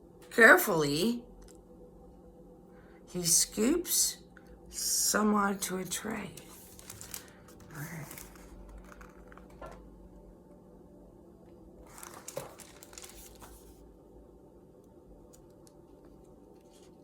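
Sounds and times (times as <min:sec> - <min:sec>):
low room hum: 0:00.0 - 0:17.0
paper rustling: 0:06.3 - 0:09.8, 0:11.8 - 0:13.8.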